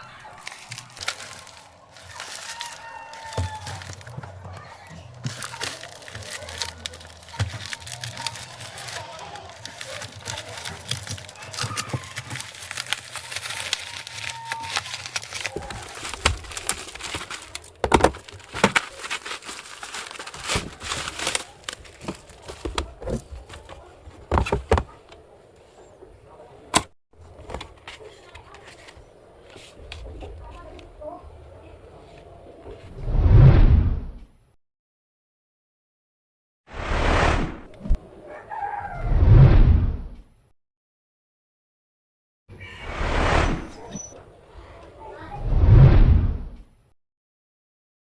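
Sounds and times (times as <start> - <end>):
packaging crinkling and tearing: 0.0 - 24.9.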